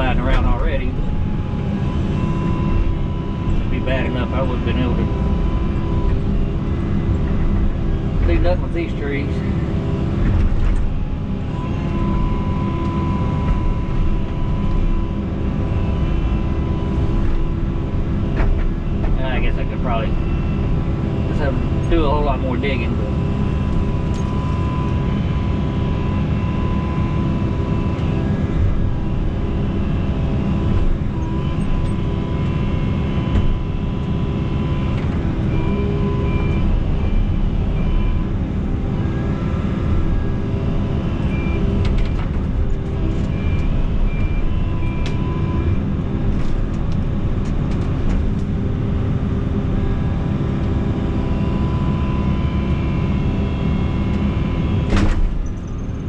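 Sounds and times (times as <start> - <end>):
thin whine: 0.0 - 47.4
excavator diesel engine running: 0.0 - 56.0.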